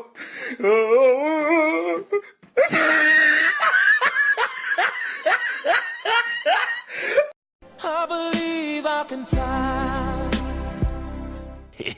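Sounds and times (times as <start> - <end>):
person laughing: 2.6 - 7.3.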